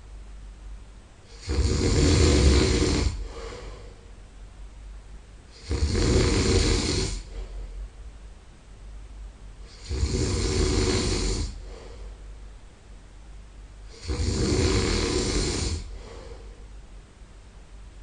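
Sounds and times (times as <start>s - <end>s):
quiet breathing: 1.2s - 4.3s, 5.5s - 8.1s, 9.5s - 12.5s, 13.8s - 17.0s
man snoring: 1.3s - 3.9s, 5.5s - 7.4s, 9.6s - 11.9s, 13.9s - 16.4s.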